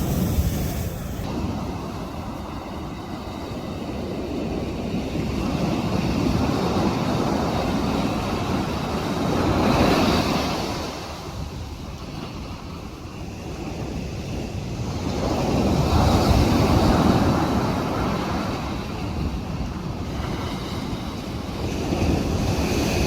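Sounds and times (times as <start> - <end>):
ocean wave crashing: 0.0 - 3.8.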